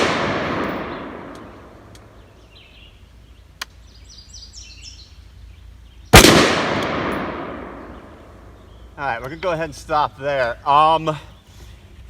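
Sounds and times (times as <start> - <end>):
rifle shot with echo: 0.0 - 2.0, 6.1 - 8.4
birds chirping faintly: 0.0 - 12.0.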